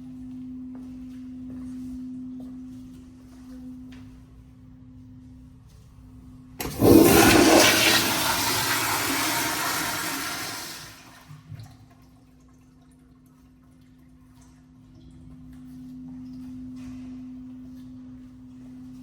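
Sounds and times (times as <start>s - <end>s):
toilet flushing: 6.6s - 13.8s.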